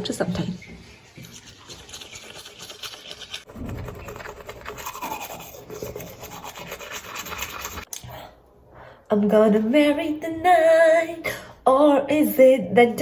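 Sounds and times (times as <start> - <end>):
toothbrush scrubbing teeth: 0.3 - 7.9.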